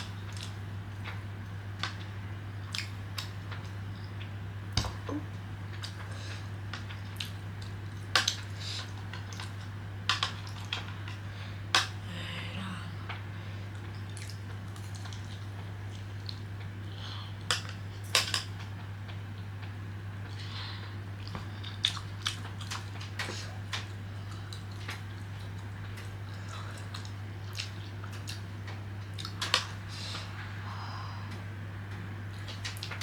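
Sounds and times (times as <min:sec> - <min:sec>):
steady low hum: 0:00.0 - 0:33.0
soft chewing: 0:13.0 - 0:17.8, 0:18.6 - 0:30.6.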